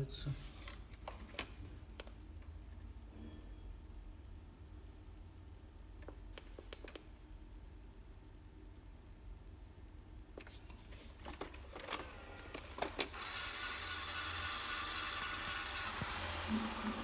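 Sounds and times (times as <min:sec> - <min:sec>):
robot vacuum motor whining: 0:11.9 - 0:17.0.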